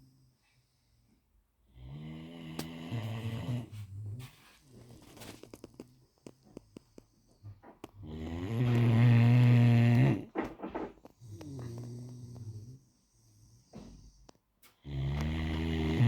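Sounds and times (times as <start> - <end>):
dog snoring: 1.7 - 16.0
soft clicks and puffs: 3.8 - 8.0.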